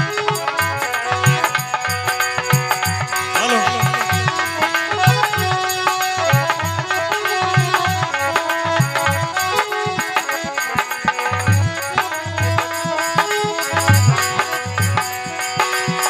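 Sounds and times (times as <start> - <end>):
hand drum rhythm: 0.0 - 16.0
sustained melody notes: 3.2 - 5.7.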